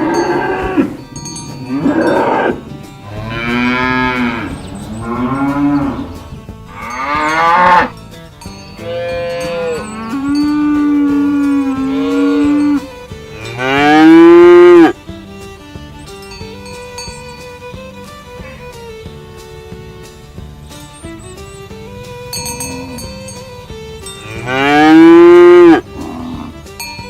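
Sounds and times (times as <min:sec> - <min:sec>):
cattle mooing: 0:00.0 - 0:07.9, 0:08.8 - 0:15.0, 0:24.2 - 0:26.7.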